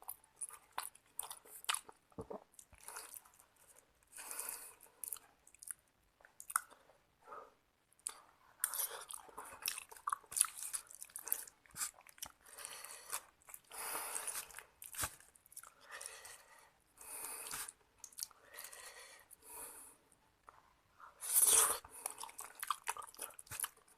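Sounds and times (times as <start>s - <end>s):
chewing and biting: 0.1s - 3.4s, 8.0s - 16.1s, 21.2s - 23.9s.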